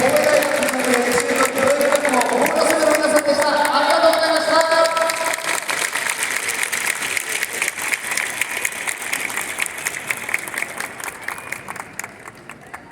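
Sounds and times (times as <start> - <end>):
crowd applauding: 0.0 - 12.9.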